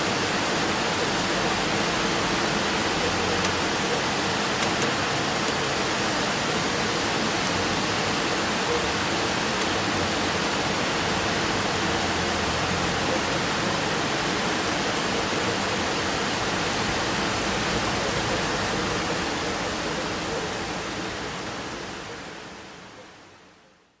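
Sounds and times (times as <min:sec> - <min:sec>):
steady rainfall: 0:00.0 - 0:23.6.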